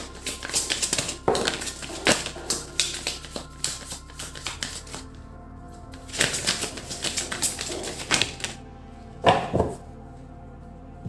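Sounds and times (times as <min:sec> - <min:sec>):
cards being shuffled: 0:00.0 - 0:05.1, 0:06.0 - 0:08.6.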